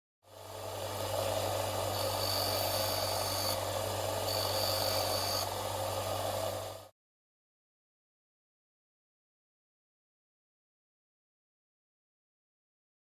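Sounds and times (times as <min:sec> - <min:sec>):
electric circular saw running: 0:00.4 - 0:06.9.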